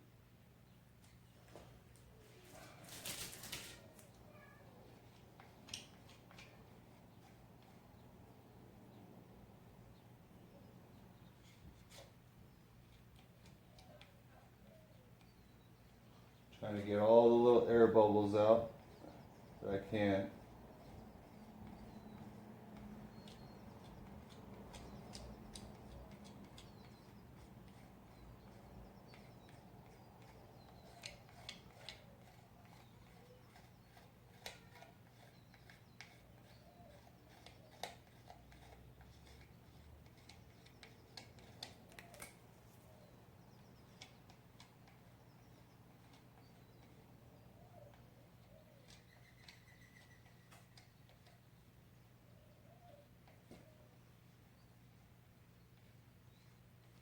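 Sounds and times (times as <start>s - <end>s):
faint clicks and taps: 5.0s - 7.8s, 20.4s - 42.4s.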